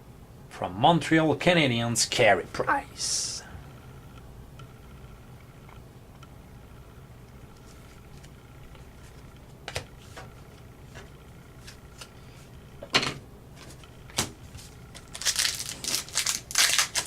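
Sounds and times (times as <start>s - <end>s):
foil wrapper crinkling: 14.1s - 17.0s.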